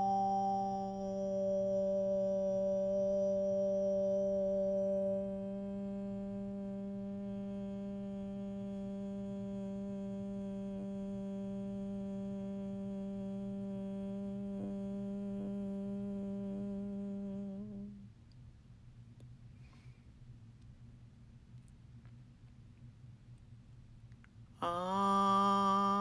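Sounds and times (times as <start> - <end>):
person humming a low note: 0.0 - 18.1, 24.6 - 26.0.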